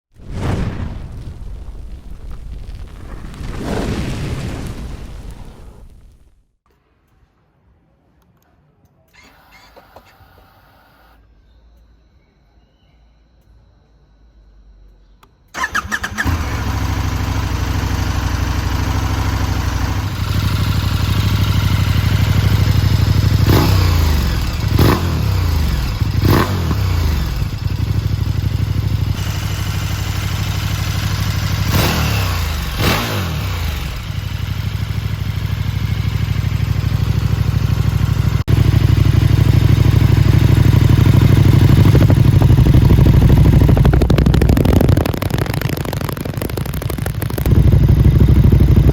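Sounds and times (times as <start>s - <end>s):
motorcycle engine starting and idling: 9.1s - 11.2s, 15.5s - 48.9s
motorcycle throttle blips: 15.1s - 48.9s.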